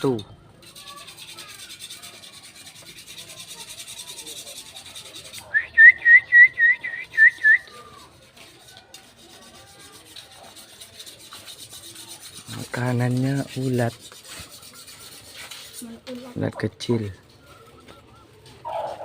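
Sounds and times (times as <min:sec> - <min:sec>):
bird whistling upward notes: 0:05.4 - 0:07.9.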